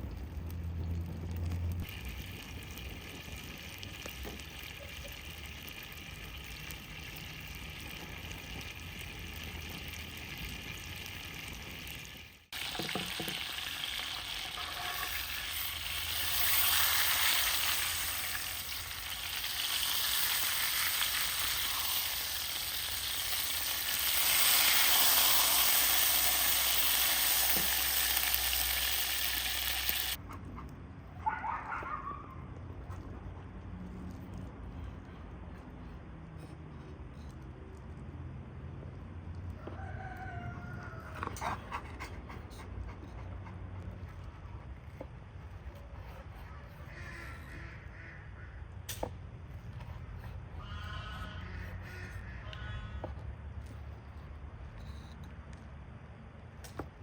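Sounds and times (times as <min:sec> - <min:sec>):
steak sizzling in hot fat: 0:01.9 - 0:30.2.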